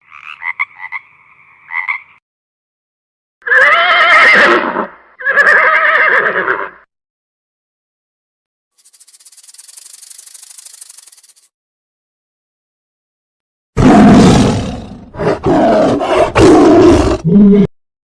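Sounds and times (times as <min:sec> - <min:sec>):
high fast-pulsing rattling buzz: 0:08.8 - 0:11.5.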